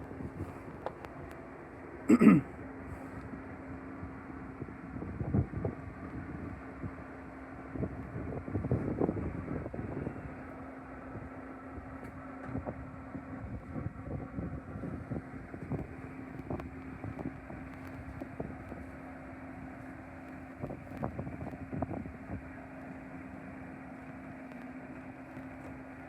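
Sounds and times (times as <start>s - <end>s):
wind buffeting microphone: 0.0s - 1.3s, 3.2s - 19.0s, 20.5s - 22.6s
steady low hum: 0.0s - 26.0s.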